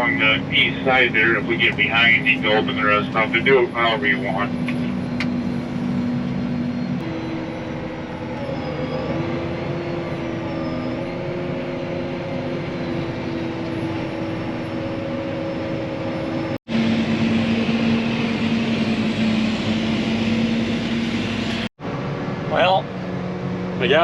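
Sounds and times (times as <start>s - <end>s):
harvest machinery engine drone: 0.0s - 24.0s.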